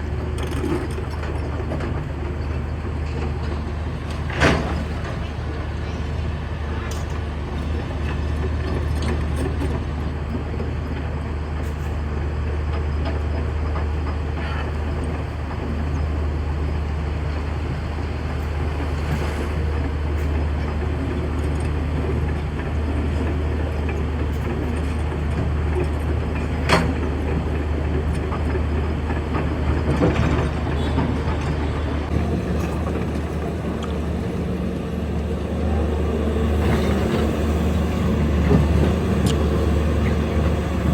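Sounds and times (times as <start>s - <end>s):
excavator diesel engine drone: 12.1s - 40.9s.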